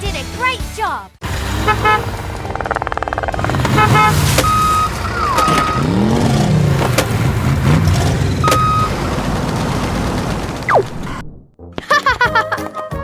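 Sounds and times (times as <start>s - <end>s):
cartoon engine hum: 1.2s - 11.2s
sliding pitch tones: 1.4s - 11.2s.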